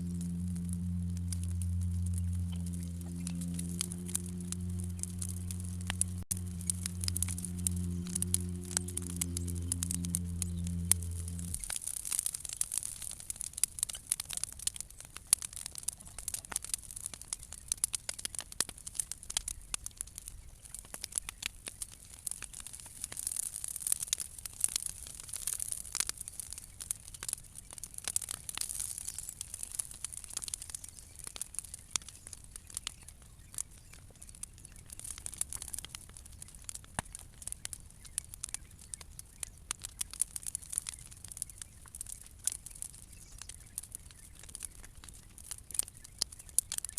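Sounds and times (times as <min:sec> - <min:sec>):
fire hissing: 0:00.0 - 0:13.1
bonfire crackling and popping: 0:00.0 - 0:46.9.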